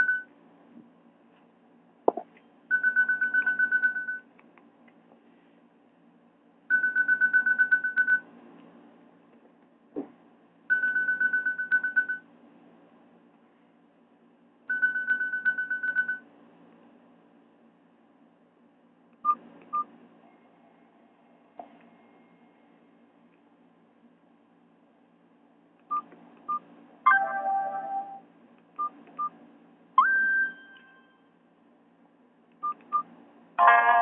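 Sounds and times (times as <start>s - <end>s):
electronic ringtone trill: 27.1s - 28.2s, 30.0s - 31.2s.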